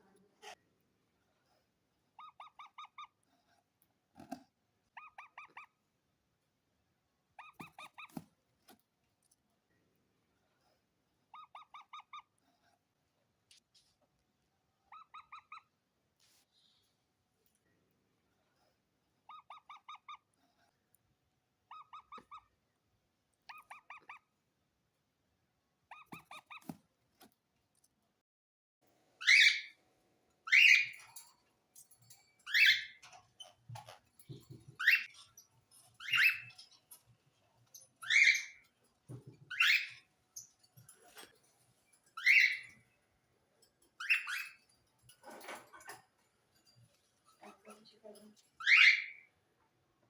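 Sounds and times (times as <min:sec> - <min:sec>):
parakeet chattering: 0:02.2 - 0:03.2, 0:04.9 - 0:05.8, 0:07.4 - 0:08.2, 0:11.3 - 0:12.4, 0:14.9 - 0:15.7, 0:19.3 - 0:20.3, 0:21.7 - 0:22.5, 0:23.5 - 0:24.3, 0:25.9 - 0:26.8, 0:32.5 - 0:37.0, 0:38.0 - 0:38.8, 0:39.5 - 0:40.6, 0:44.0 - 0:44.6
parakeet screeching calls: 0:29.2 - 0:29.8, 0:30.5 - 0:31.0, 0:32.5 - 0:33.0, 0:36.0 - 0:36.7, 0:38.0 - 0:38.6, 0:39.5 - 0:40.0, 0:42.2 - 0:42.8, 0:44.0 - 0:44.6, 0:48.6 - 0:49.2.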